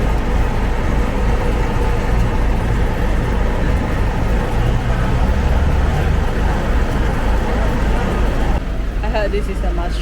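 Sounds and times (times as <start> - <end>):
moving vehicle rumble: 0.0 - 10.0.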